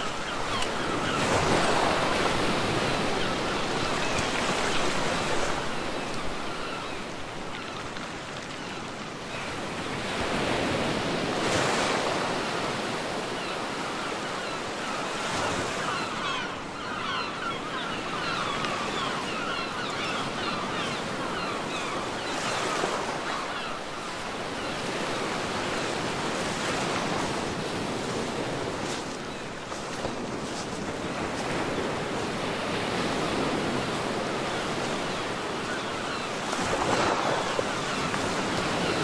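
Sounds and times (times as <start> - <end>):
waves breaking on beach: 0.0 - 39.0
wind: 0.0 - 39.0.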